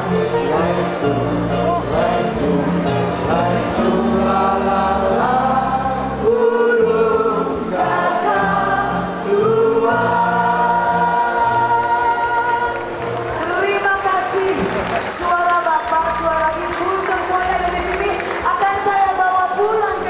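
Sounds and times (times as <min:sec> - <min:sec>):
voices singing long held notes: 0:00.0 - 0:13.5.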